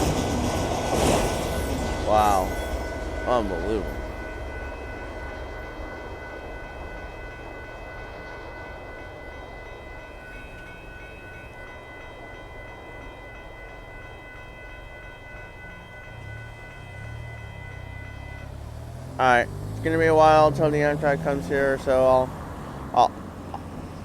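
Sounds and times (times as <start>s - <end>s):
train wheels rumbling on rail: 0.0s - 24.0s
high-pitched tones: 1.2s - 14.6s.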